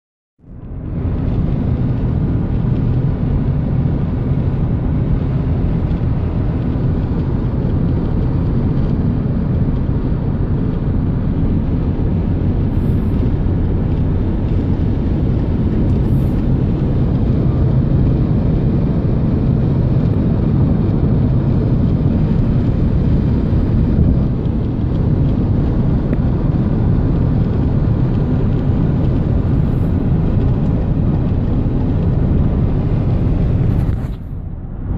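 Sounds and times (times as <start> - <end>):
wind and road noise in car: 0.4 - 34.9.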